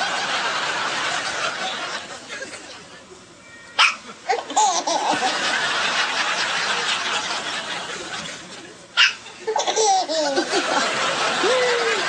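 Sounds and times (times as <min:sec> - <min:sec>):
breathy laughter: 0:09.4 - 0:12.0.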